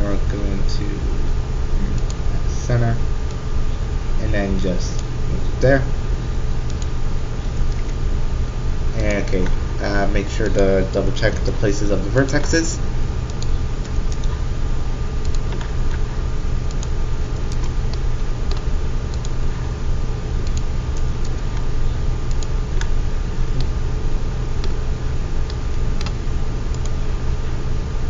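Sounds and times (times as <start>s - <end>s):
steady low hum: 0.0s - 28.0s
computer mouse clicks: 6.7s - 6.9s, 13.3s - 14.4s, 15.2s - 16.0s, 16.7s - 19.4s, 20.4s - 21.7s, 22.3s - 22.9s, 25.5s - 27.0s
computer keyboard clicks: 14.1s - 14.4s, 15.2s - 16.0s.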